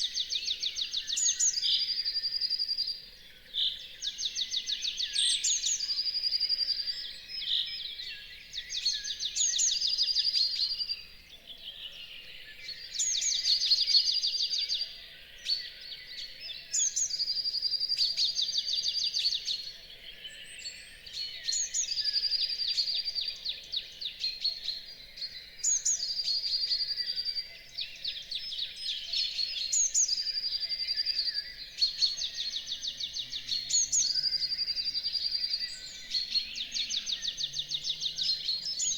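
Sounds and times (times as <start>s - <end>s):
songbirds singing: 0.0s - 38.9s.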